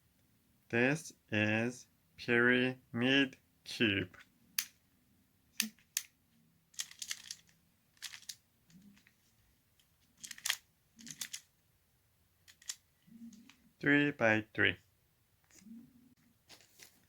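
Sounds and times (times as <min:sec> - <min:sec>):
twisty puzzle plastic clicking: 0:06.8 - 0:09.1, 0:10.2 - 0:11.5, 0:12.5 - 0:13.6.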